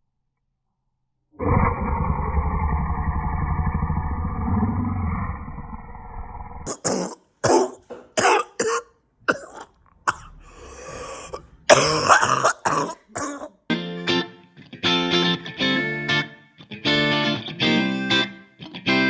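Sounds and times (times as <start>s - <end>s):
person coughing: 6.7s - 13.6s.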